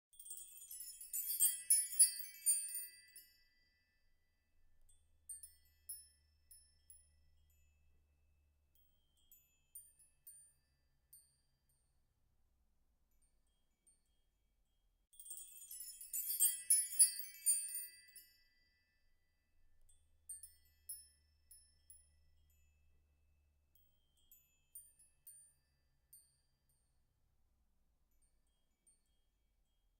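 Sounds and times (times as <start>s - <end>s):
wind chimes ringing: 0.1s - 3.8s, 4.9s - 8.0s, 15.1s - 18.8s, 19.8s - 23.0s.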